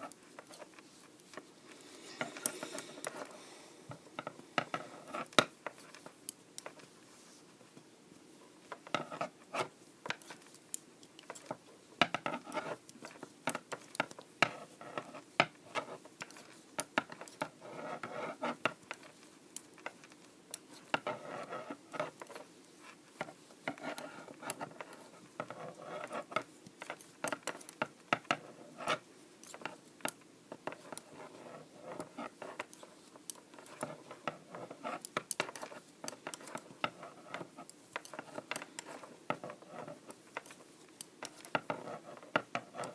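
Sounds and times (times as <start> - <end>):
yarn scratching: 0.0 - 1.5, 12.2 - 42.9
knitting needles clicking: 31.9 - 42.9.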